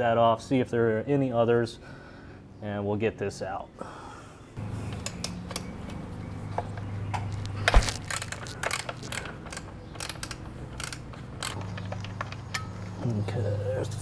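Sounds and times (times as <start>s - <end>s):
ratchet wrench clicking: 8.0s - 11.6s.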